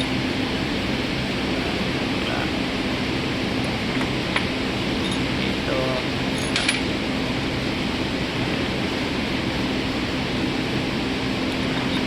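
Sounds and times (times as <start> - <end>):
steady mechanical hum: 0.0 - 12.0
metallic clink of metal parts: 5.0 - 5.3, 6.4 - 6.8.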